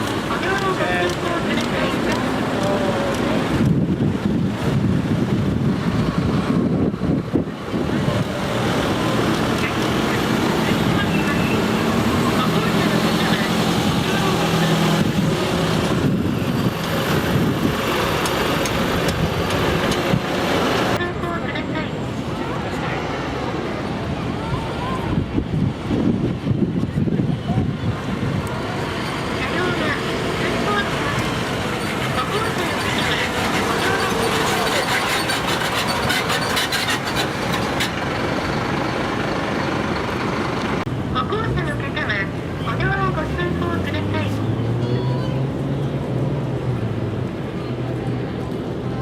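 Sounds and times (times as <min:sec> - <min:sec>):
heavy truck engine running: 0:00.0 - 0:21.3, 0:26.4 - 0:41.7
vehicle engine running: 0:28.4 - 0:41.7.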